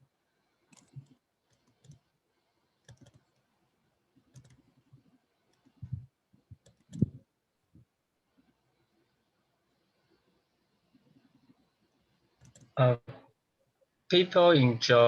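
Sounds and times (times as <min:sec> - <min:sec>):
irregular clicks and light knocks: 0:00.7 - 0:02.1, 0:02.8 - 0:03.5, 0:04.2 - 0:08.6, 0:12.3 - 0:12.8.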